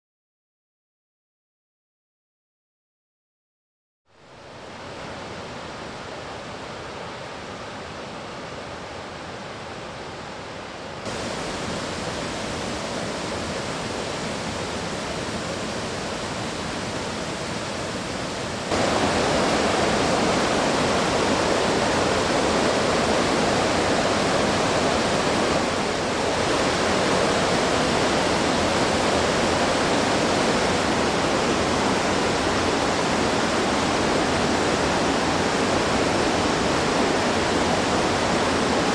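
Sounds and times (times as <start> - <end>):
waterfall rushing: 11.0 - 38.9.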